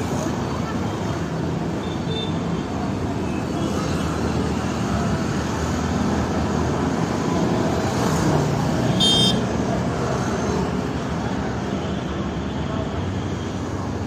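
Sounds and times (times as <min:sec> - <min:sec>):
road traffic: 0:00.0 - 0:14.0.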